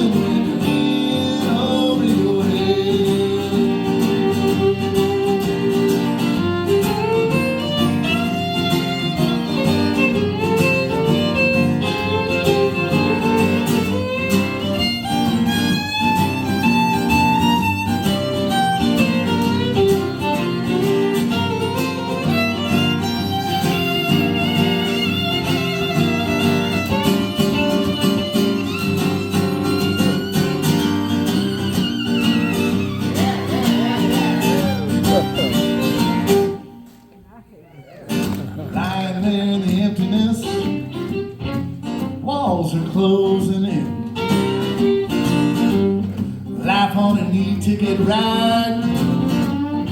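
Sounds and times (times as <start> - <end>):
fiddle melody: 0.0 - 36.9, 39.3 - 42.2, 42.9 - 46.2, 47.4 - 49.9
acoustic guitar accompaniment: 0.0 - 49.9.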